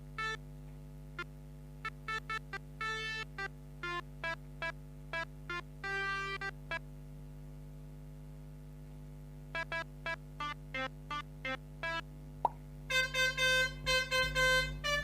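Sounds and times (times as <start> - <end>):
steady low hum: 0.0 - 15.0
melodica staccato notes: 2.0 - 4.0, 5.8 - 6.5, 12.9 - 15.0.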